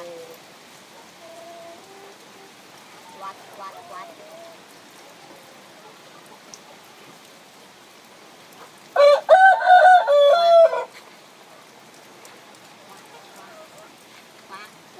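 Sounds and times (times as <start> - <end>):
faint background hiss: 0.0 - 14.9
rooster crowing: 9.0 - 10.9.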